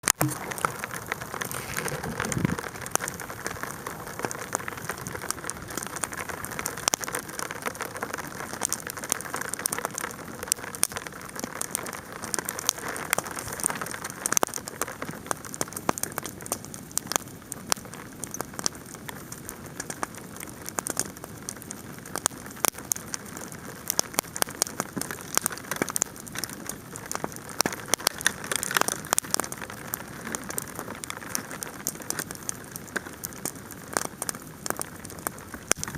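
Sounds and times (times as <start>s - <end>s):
hail pattering: 0.0s - 16.6s, 18.3s - 35.9s
bonfire crackling and popping: 0.0s - 35.9s.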